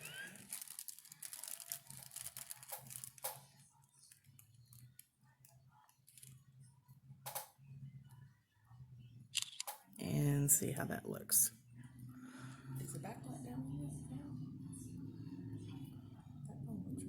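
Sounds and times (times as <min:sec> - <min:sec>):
sharp click: 0:09.4 - 0:09.8
low steady hum: 0:10.0 - 0:17.0.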